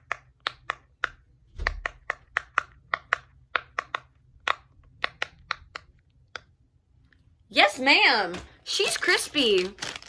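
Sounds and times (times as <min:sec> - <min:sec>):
pop-it toy bubbles popping: 0:00.0 - 0:06.5.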